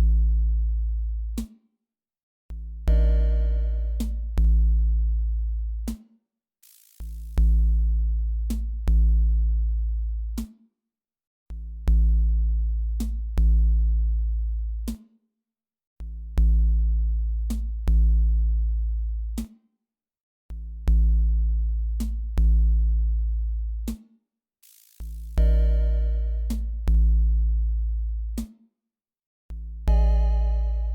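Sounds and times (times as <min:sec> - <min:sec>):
electronic music with deep bass: 0:02.9 - 0:04.4, 0:25.0 - 0:27.2, 0:29.9 - 0:30.9.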